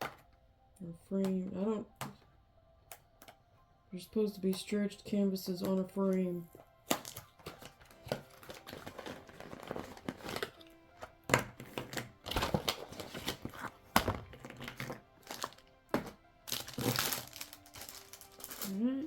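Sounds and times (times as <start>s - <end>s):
objects knocking and clattering: 0.0s - 0.3s, 6.9s - 18.7s
faint music: 0.0s - 19.0s
packaging crinkling: 6.9s - 10.7s, 11.6s - 18.8s.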